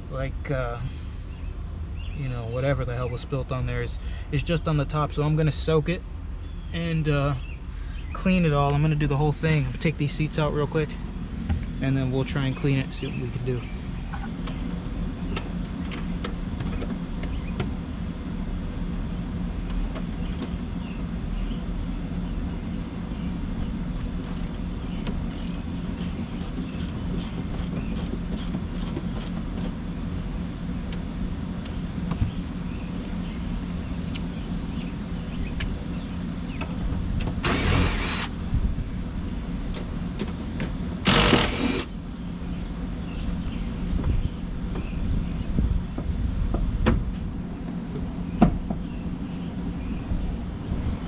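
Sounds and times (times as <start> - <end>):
steady low rumble: 0.0 - 19.7, 29.7 - 51.0
loud rasping bursts: 37.4 - 38.4, 41.0 - 42.0.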